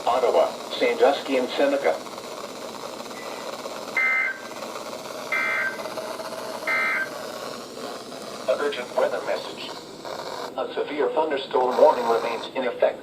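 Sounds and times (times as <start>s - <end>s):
radio static hiss: 0.0s - 13.0s
digital data tone chirps: 3.1s - 4.6s, 5.3s - 5.9s, 6.6s - 7.2s.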